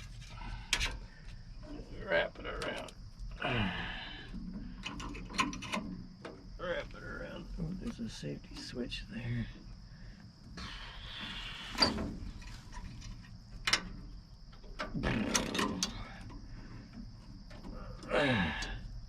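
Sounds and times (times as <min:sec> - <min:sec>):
crickets chirping: 0:00.0 - 0:19.0
metallic clicks and rattles: 0:04.7 - 0:06.4, 0:11.8 - 0:16.4.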